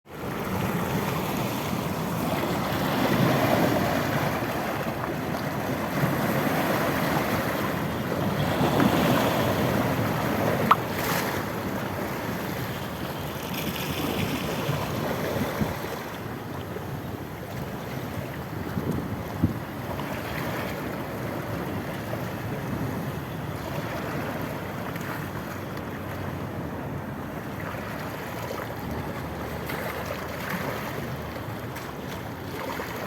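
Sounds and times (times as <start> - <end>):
sea waves breaking on shore: 0.1 - 33.0
wind buffeting microphone: 18.5 - 20.2.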